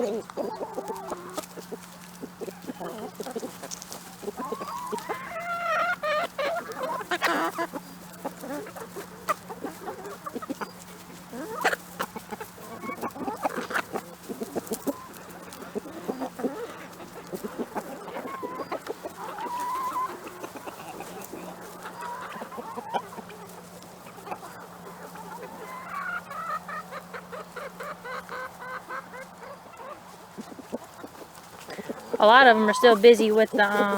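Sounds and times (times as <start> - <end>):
chickens clucking: 0.0 - 33.9.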